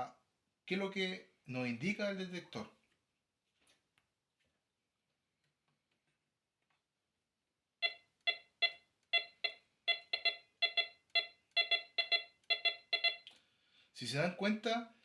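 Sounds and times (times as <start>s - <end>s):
metal detector choppy beeps: 7.8s - 13.3s.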